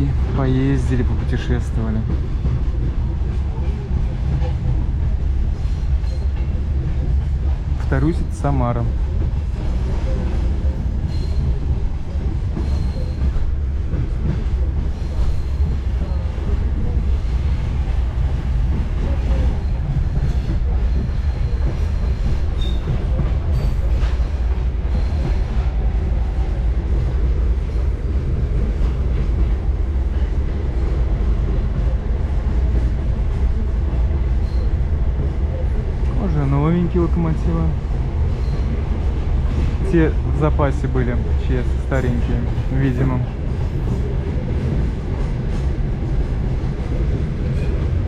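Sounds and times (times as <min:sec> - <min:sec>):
railcar rumbling on rails: 0:00.0 - 0:48.0
faint high wheel squeal: 0:11.1 - 0:11.6, 0:12.6 - 0:13.2, 0:22.6 - 0:22.9, 0:34.4 - 0:34.7, 0:38.4 - 0:38.8.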